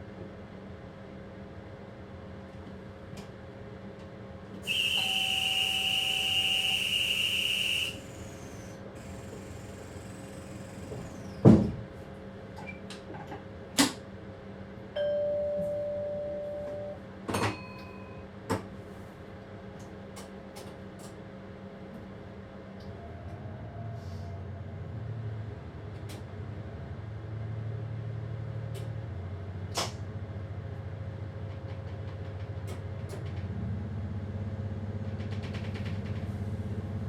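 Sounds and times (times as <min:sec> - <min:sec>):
moving train hum: 0:00.0 - 0:14.3
high electronic tone: 0:04.7 - 0:08.3.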